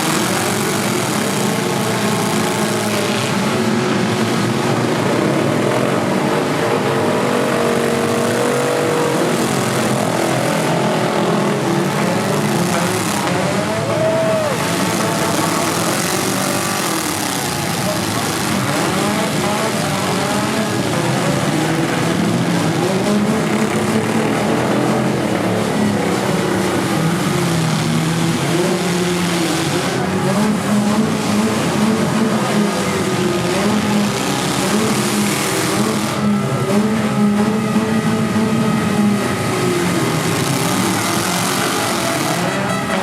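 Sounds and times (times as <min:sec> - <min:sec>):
demolition derby cars revving: 0:00.0 - 0:43.0.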